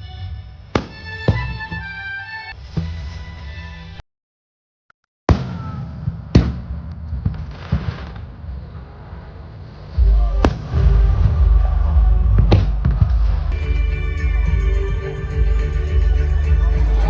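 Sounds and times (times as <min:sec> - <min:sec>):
fireworks bursting in sharp bangs: 0:05.3 - 0:08.5
deep booming rumble: 0:09.9 - 0:17.0
show music: 0:13.5 - 0:17.0.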